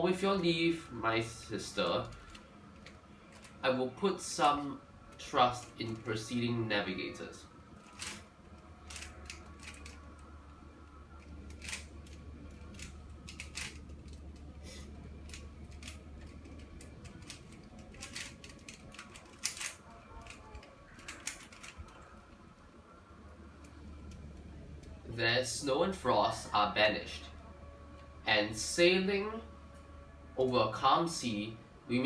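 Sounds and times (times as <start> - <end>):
faint low hum: 0.0 - 32.0
puzzle cube clicking: 7.8 - 10.3, 11.2 - 22.4.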